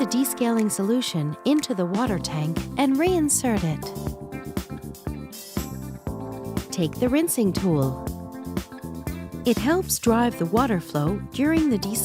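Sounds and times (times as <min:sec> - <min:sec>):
background music with light beat: 0:00.0 - 0:12.0.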